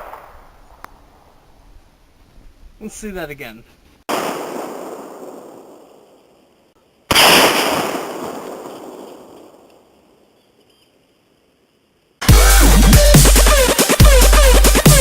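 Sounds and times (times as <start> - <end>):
loud blast: 7.1 - 8.7.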